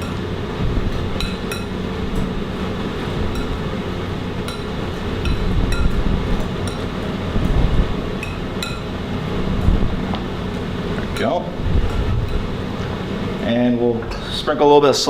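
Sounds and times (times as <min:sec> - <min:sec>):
kitchen ventilation hum: 0:00.0 - 0:15.0
spoon clinking against bowl: 0:01.2 - 0:01.8, 0:03.3 - 0:03.6, 0:04.4 - 0:06.0, 0:06.6 - 0:06.9, 0:08.2 - 0:08.9.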